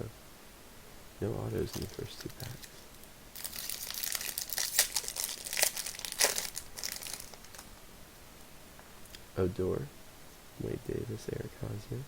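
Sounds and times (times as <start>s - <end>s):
plastic wrapper tearing and crinkling: 1.6s - 7.7s.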